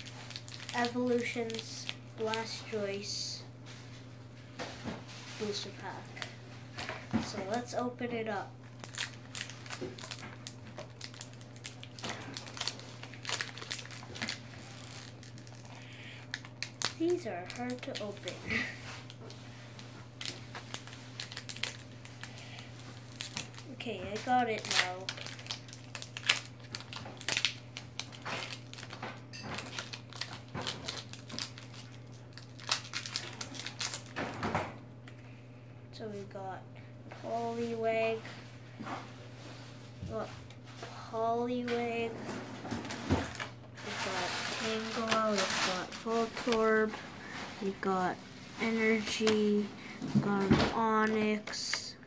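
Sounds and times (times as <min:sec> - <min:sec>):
foil wrapper crinkling: 0:00.0 - 0:03.4, 0:05.3 - 0:08.0, 0:08.6 - 0:34.4, 0:42.6 - 0:51.9.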